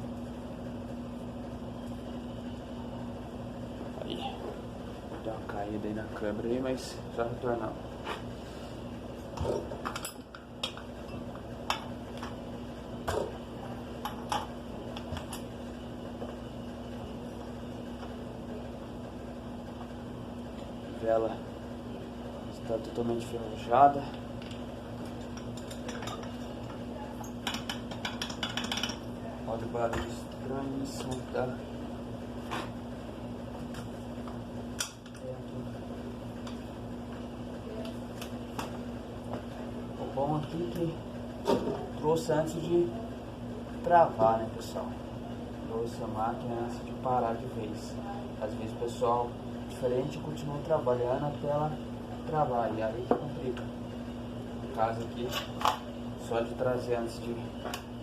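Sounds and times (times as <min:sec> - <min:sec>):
low background hum: 0:00.0 - 0:58.0
metallic clicks inside engine: 0:27.4 - 0:29.0.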